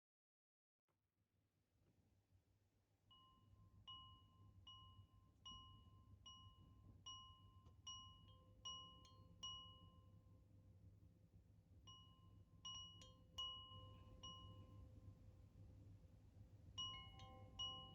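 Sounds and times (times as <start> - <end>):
faint low hum: 3.0 - 17.9
chime ringing: 16.8 - 17.9.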